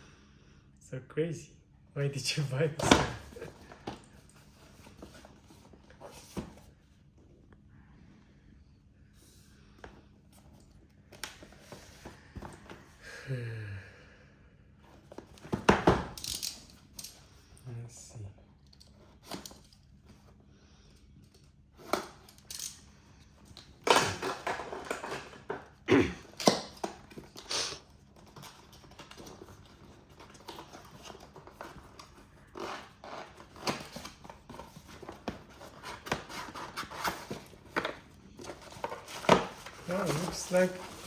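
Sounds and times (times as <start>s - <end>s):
packaging rustling and scraping: 2.9s - 7.0s, 21.8s - 41.0s.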